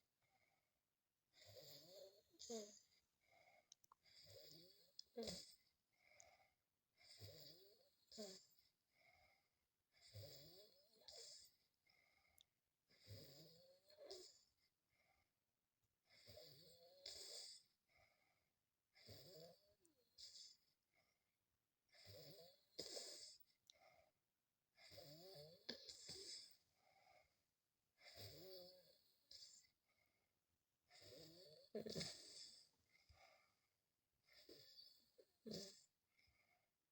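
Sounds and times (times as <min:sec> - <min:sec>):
boy snoring: 0:01.4 - 0:02.8, 0:04.2 - 0:05.6, 0:07.1 - 0:08.5, 0:10.1 - 0:11.5, 0:13.0 - 0:14.3, 0:16.2 - 0:17.7, 0:19.0 - 0:19.6, 0:22.0 - 0:23.4, 0:24.8 - 0:26.6, 0:28.0 - 0:29.5, 0:30.9 - 0:32.6, 0:34.4 - 0:35.8.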